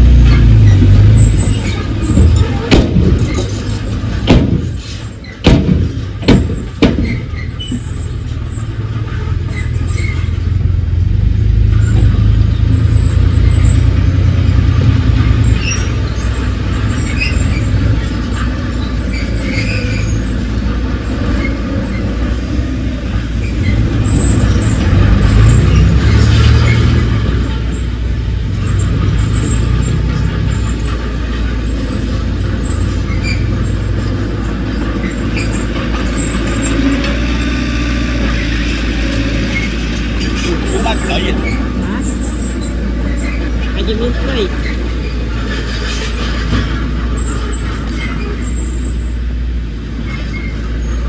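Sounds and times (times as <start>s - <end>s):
diesel earthmoving machinery rumble: 0.0s - 51.0s
sharp metallic knocks: 0.1s - 8.6s.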